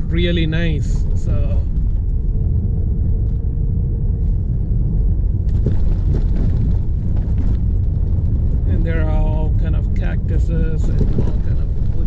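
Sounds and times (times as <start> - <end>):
vehicle rumbling over dirt: 0.0 - 12.0
rattles and knocks: 5.4 - 12.0.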